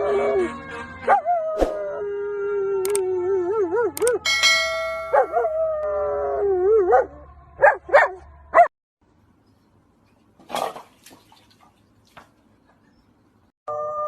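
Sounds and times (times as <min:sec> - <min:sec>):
dog barking: 0:06.9 - 0:08.7.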